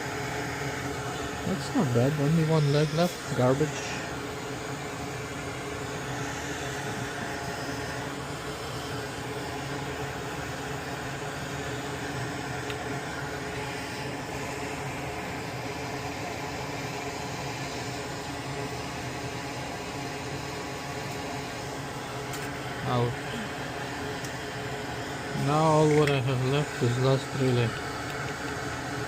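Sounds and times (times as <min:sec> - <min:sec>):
electric fan running: 0:00.0 - 0:29.0.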